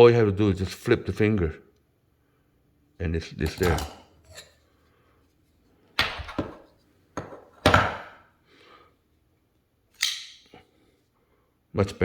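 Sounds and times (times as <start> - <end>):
folding knife clicks and snaps: 10.0 - 10.5.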